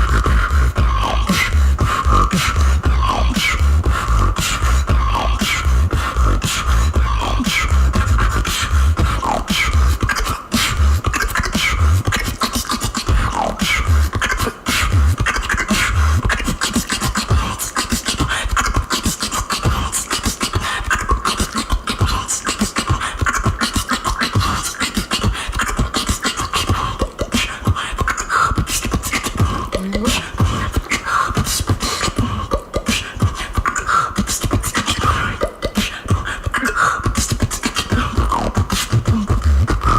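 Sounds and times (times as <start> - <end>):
woman beatboxing: 0.0 - 39.9.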